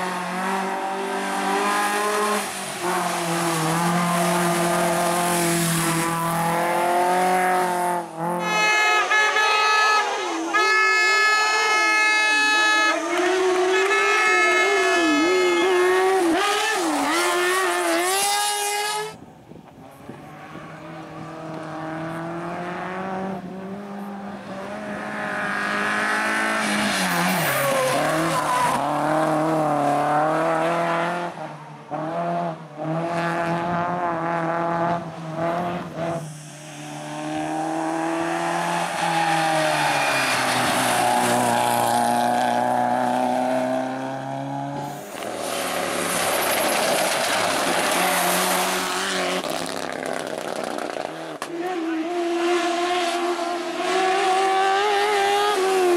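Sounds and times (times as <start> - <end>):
racing car engines revving: 0.0 - 55.9
tyres squealing: 38.7 - 42.1.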